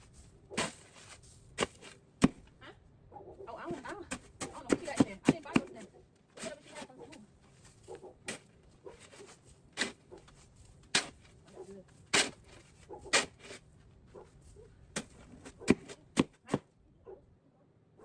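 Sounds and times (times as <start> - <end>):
short knocks and scrapes: 3.7 - 14.3.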